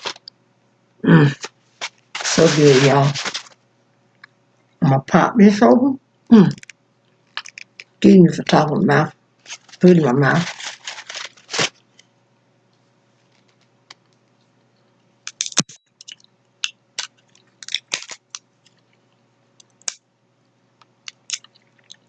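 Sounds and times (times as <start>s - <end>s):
person chewing with mouth smacks: 21.0s - 22.0s.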